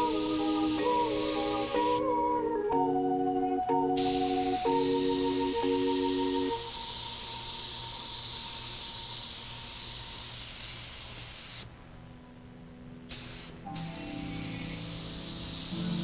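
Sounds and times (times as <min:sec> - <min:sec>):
paint spray gun hissing: 0:00.0 - 0:02.0, 0:06.6 - 0:11.7, 0:13.1 - 0:16.0.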